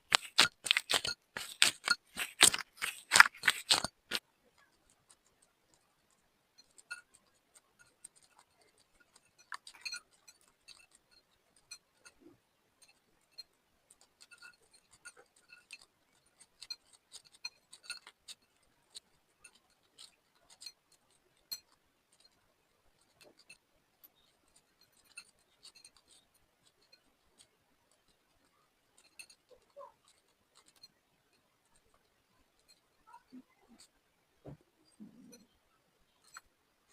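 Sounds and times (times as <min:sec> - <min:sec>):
slime sticky clicks and crackles: 0:00.1 - 0:04.2.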